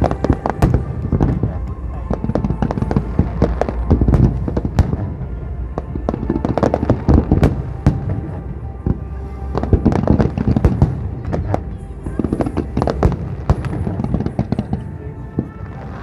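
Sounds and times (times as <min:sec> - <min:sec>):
fireworks bangs and crackles: 0:00.0 - 0:16.0
low rumble: 0:00.0 - 0:16.0.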